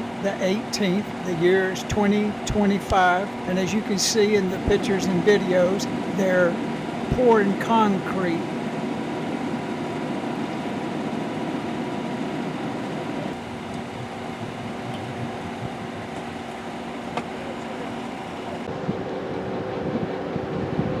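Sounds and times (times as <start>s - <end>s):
steady tones: 0.0s - 9.8s, 13.2s - 18.7s
construction machinery engine drone: 0.0s - 21.0s.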